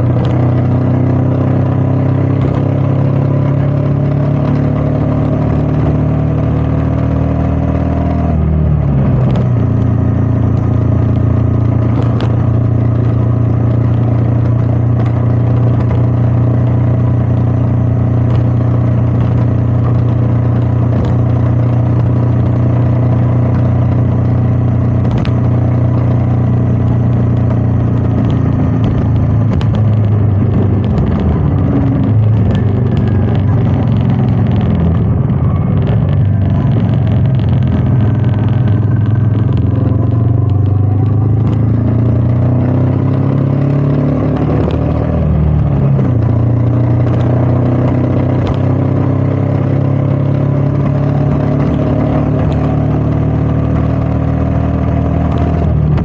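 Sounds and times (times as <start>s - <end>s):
motorcycle engine running: 0.0s - 56.0s
wind noise on microphone: 26.8s - 42.4s.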